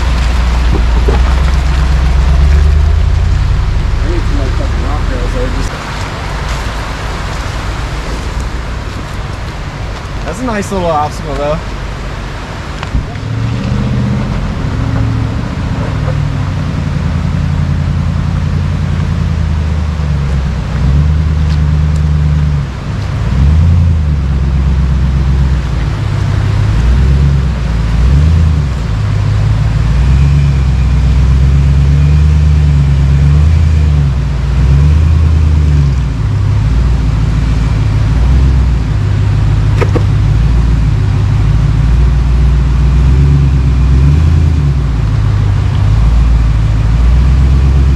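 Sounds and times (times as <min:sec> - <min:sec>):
truck engine running at low revs: 0:00.0 - 0:47.9.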